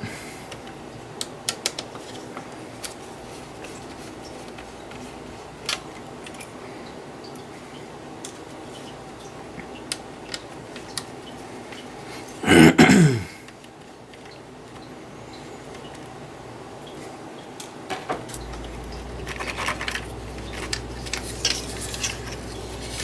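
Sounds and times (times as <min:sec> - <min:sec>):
short sound dropping in pitch: 0:18.2 - 0:21.1.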